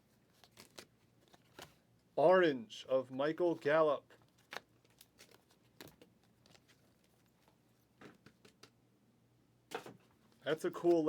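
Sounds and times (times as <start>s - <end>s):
cards clicking and rustling: 0.3s - 1.8s, 4.2s - 7.2s.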